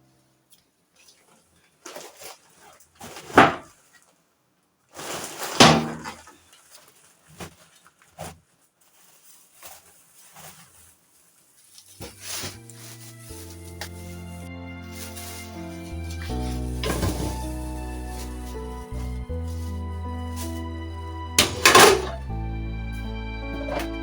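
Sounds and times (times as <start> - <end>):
sudden knocks and thuds: 16.2 - 19.2.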